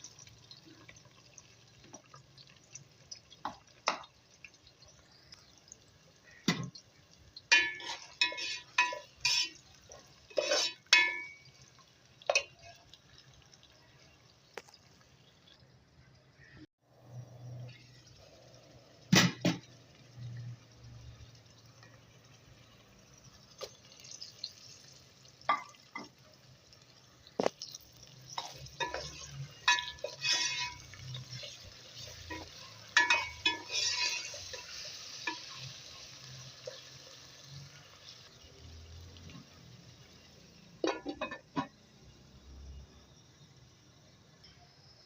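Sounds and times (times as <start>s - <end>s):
metal spoon clinking on cookware: 7.5s - 11.6s, 27.6s - 35.7s, 40.8s - 41.8s.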